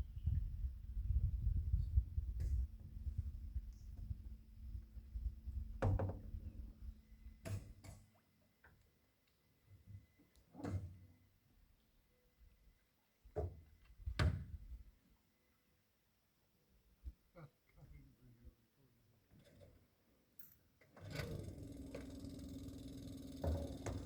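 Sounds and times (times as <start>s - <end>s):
dull knocks and thumps: 5.8s - 6.4s.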